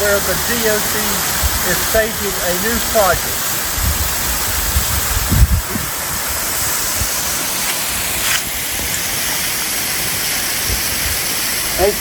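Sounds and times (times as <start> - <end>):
waterfall rushing: 0.0 - 12.0
wind buffeting microphone: 1.3 - 1.9, 2.7 - 9.2, 10.5 - 11.3.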